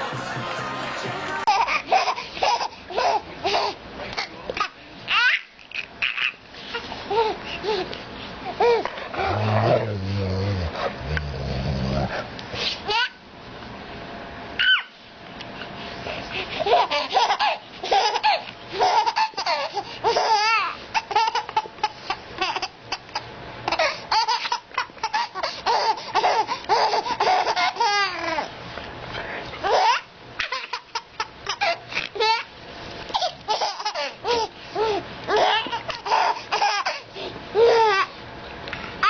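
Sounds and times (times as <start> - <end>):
baby giggling: 1.4 - 3.8, 16.6 - 28.5, 33.2 - 38.1
baby squealing: 14.6 - 14.9.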